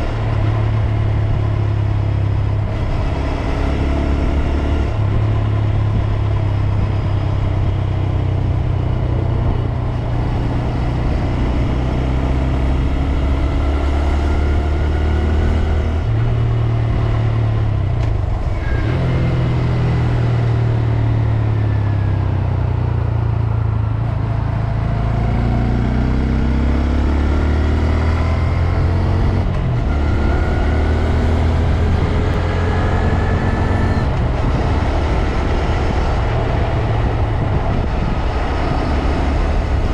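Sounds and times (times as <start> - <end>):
motorcycle engine accelerating: 0.0 - 39.9
wind rush: 27.7 - 39.9.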